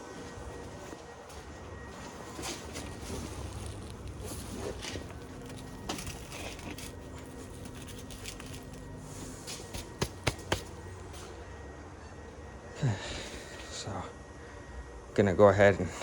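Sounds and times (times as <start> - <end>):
low steady hum: 0.0 - 16.0
sharp knocks: 9.7 - 10.7.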